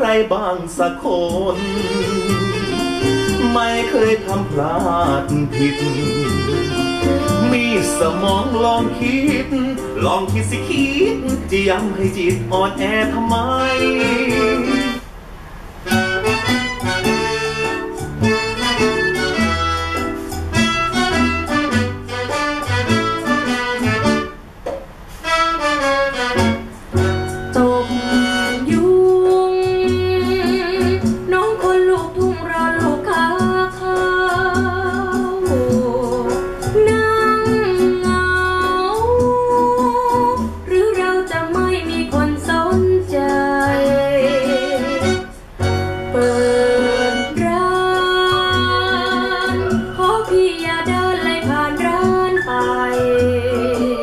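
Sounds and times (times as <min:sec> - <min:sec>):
song through speakers: 0:00.0 - 0:15.2, 0:15.9 - 0:24.4, 0:25.2 - 0:54.0
guitar: 0:00.0 - 0:54.0
melody with vibrato: 0:13.3 - 0:15.0, 0:15.9 - 0:24.4, 0:25.3 - 0:32.4, 0:43.6 - 0:54.0
repeating bass note: 0:15.9 - 0:24.8.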